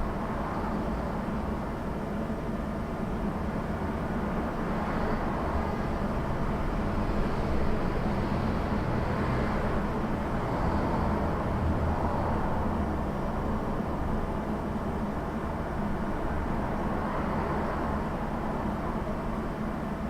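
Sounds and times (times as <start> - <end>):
street traffic rumble: 0.0 - 20.0.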